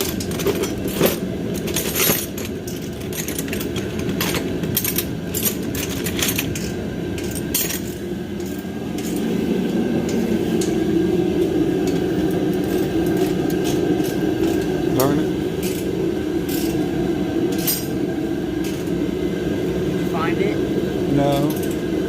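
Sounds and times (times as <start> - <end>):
metal tools clinking: 0.0 - 9.3, 16.5 - 16.8, 17.5 - 18.0, 21.2 - 21.8
steady low hum: 0.0 - 22.0.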